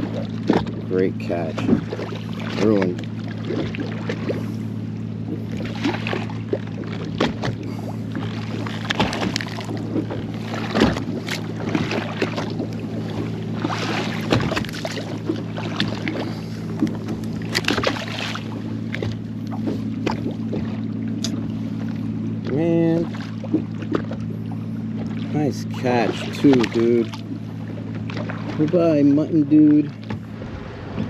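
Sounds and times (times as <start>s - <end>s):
low mechanical hum: 0.0s - 31.0s
water splashing against hull: 0.0s - 31.0s.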